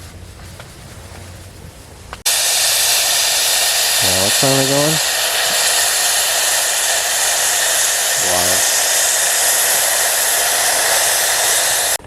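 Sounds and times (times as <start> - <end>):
gas stove burner hissing: 2.0 - 12.0.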